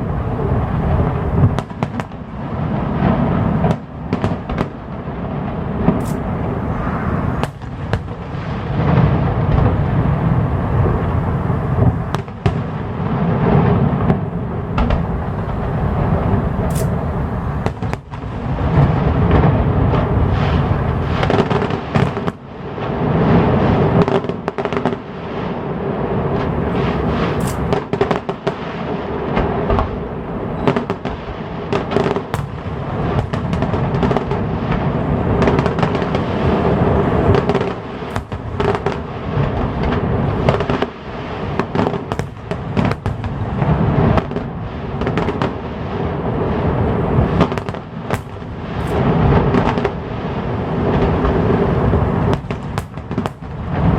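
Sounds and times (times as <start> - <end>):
fireworks bangs and crackling: 0.0 - 53.9.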